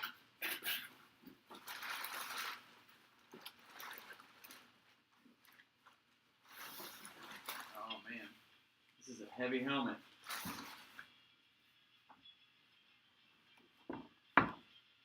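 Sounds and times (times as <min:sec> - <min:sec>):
packaging rustling and scraping: 0:01.4 - 0:08.1, 0:10.2 - 0:11.2.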